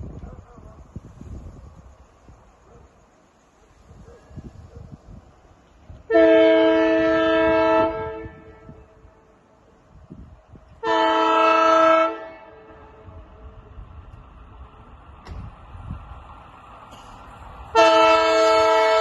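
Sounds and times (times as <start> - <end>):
locomotive air horn blasts: 6.1 - 9.1, 10.8 - 13.1, 17.7 - 19.0.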